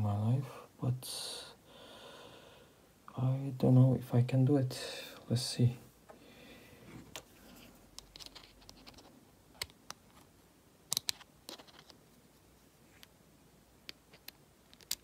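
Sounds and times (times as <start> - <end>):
small metal parts clicking: 14.2 - 15.0.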